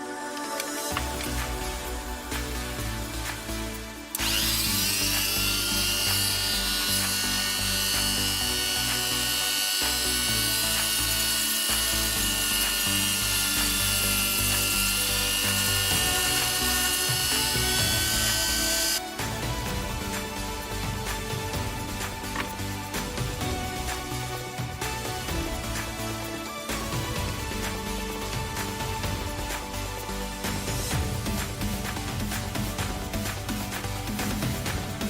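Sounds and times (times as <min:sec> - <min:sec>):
background music: 0:00.0 - 0:35.0
small electric motor whining: 0:00.4 - 0:30.9.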